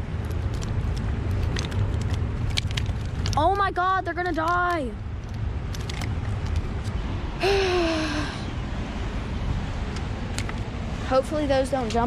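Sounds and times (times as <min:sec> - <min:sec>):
low rumble of wind: 0:00.0 - 0:12.0
water rumbling: 0:00.0 - 0:12.0
person groaning: 0:07.4 - 0:08.4.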